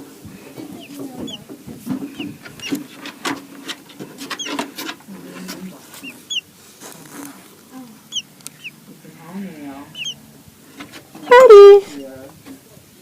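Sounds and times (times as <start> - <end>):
nestlings peeping: 0.0 - 12.1
clicks and rustles: 0.6 - 7.7.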